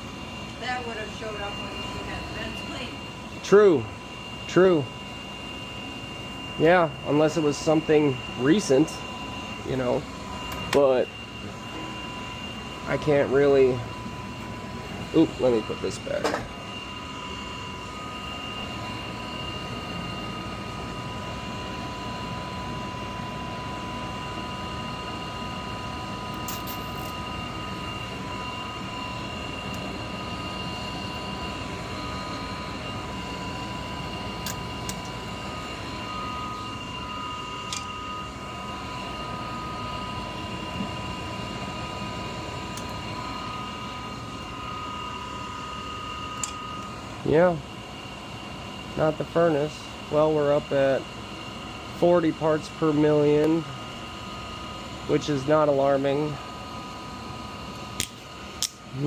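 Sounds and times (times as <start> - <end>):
high whining tones: 0.0 - 57.8
gas furnace rushing hum: 0.0 - 59.0
furnace small clicks: 46.4 - 46.6, 58.0 - 58.8.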